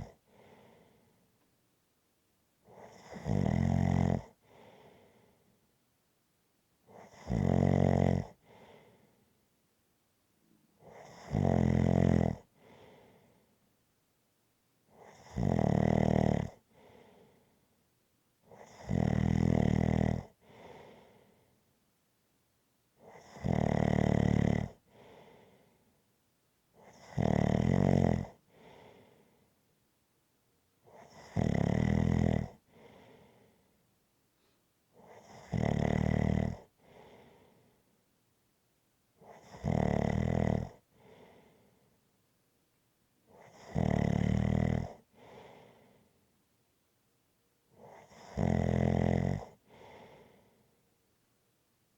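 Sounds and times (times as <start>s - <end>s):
soft breath: 0.0s - 1.5s, 4.4s - 5.7s, 8.4s - 9.4s, 12.4s - 13.7s, 16.6s - 17.8s, 20.4s - 21.7s, 24.9s - 26.0s, 28.4s - 29.6s, 32.6s - 35.2s, 36.6s - 38.0s, 40.8s - 42.1s, 45.0s - 46.4s, 49.5s - 50.9s
loud buzzing snore: 2.8s - 4.4s, 7.0s - 8.4s, 10.9s - 12.5s, 15.0s - 16.6s, 18.6s - 20.4s, 23.1s - 24.8s, 26.8s - 28.4s, 31.0s - 32.6s, 35.1s - 36.7s, 39.3s - 40.8s, 43.4s - 45.0s, 47.9s - 49.6s.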